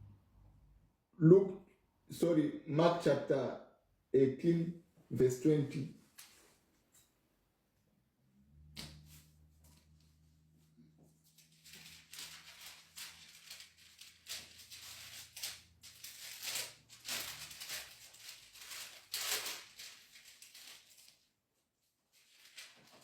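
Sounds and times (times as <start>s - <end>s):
paper pages rustling: 11.0s - 21.4s, 22.0s - 23.0s.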